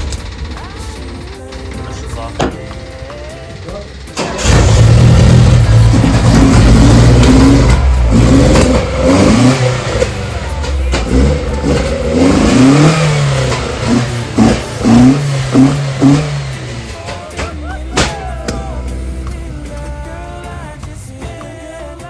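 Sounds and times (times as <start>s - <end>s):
pickup engine revving: 0.0s - 22.0s.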